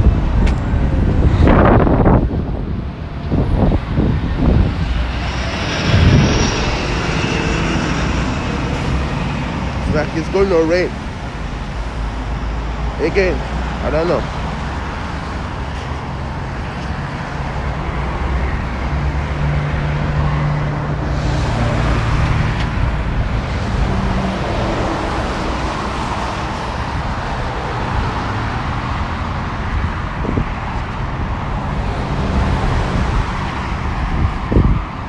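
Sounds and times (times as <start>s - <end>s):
deep engine drone: 0.0s - 16.7s, 17.5s - 27.7s
vehicles passing: 0.0s - 35.0s.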